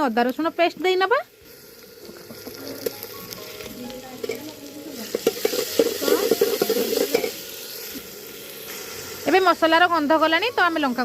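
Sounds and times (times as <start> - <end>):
onions sizzling in hot oil: 0.0 - 11.0
spoon scraping pan: 4.2 - 7.4.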